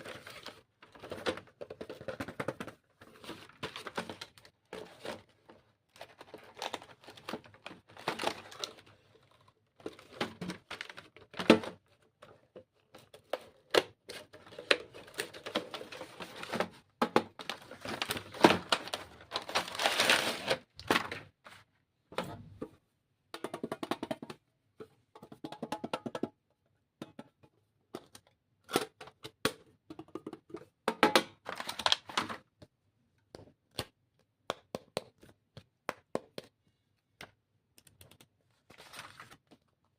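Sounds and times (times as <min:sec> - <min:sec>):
packaging crinkling: 0:17.4 - 0:21.2.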